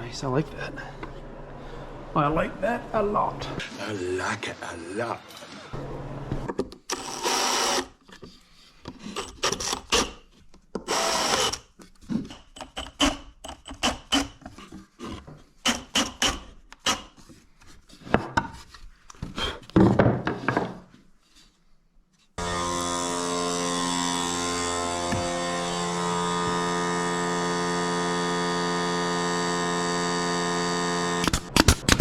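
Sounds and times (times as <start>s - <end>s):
power tool running on wood: 6.9s - 8.0s, 10.9s - 11.6s, 22.4s - 32.0s
wood knocking and scraping: 17.2s - 21.5s.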